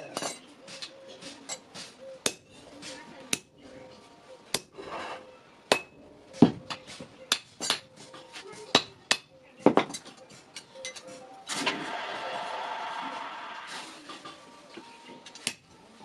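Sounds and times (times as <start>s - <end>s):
hammer striking steel on anvil: 5.7s - 6.0s.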